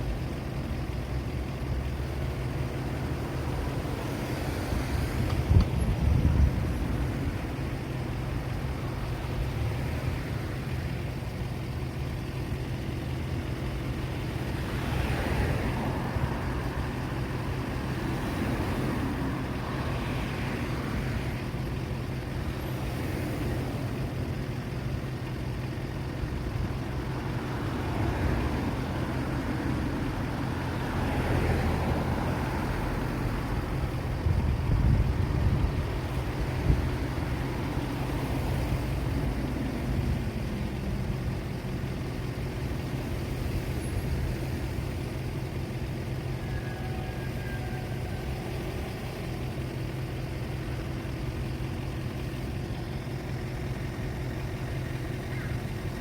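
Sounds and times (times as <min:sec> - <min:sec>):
hum of engines: 0:00.0 - 0:56.0
vehicles passing: 0:00.0 - 0:56.0.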